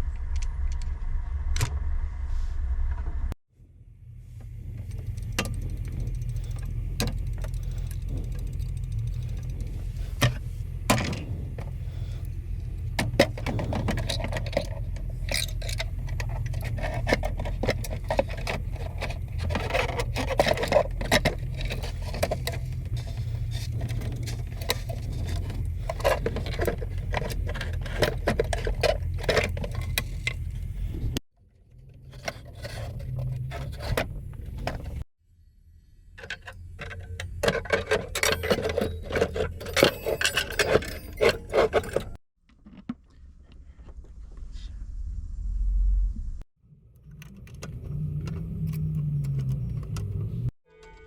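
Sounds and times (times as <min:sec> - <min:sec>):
steady low rumble: 0:00.0 - 0:31.2, 0:43.2 - 0:46.5
clock parts clicking and knocking: 0:04.9 - 0:11.7, 0:12.8 - 0:30.6, 0:36.2 - 0:42.2.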